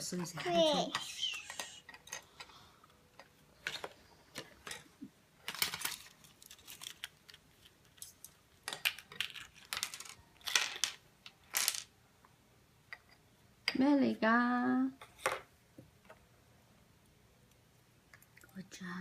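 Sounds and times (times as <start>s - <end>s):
plastic capsule clicks and crinkles: 5.4s - 11.7s.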